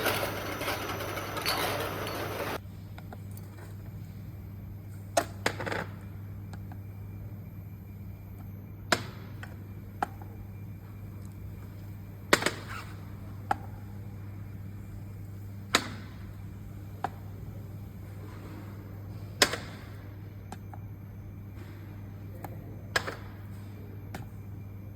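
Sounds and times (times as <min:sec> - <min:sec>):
machine motor hum: 0:00.0 - 0:02.6.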